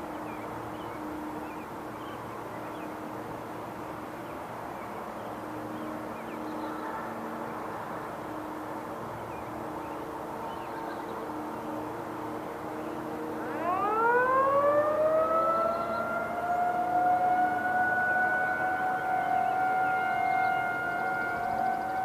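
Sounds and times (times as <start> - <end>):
outdoor warning siren wailing: 11.2 - 22.0.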